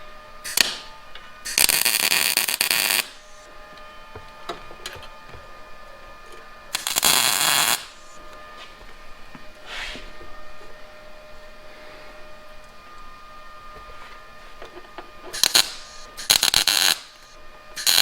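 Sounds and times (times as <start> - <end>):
welding crackling sizzle: 0.0 - 4.0, 6.7 - 8.5, 15.0 - 18.0.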